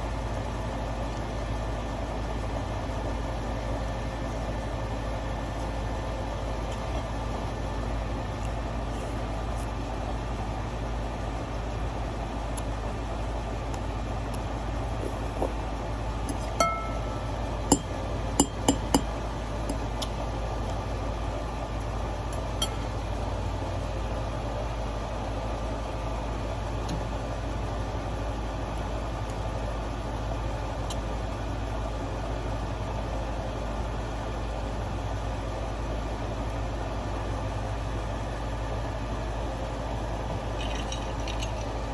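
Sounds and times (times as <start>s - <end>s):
steady low hum: 4.3s - 33.1s
tableware clinking: 16.3s - 19.1s.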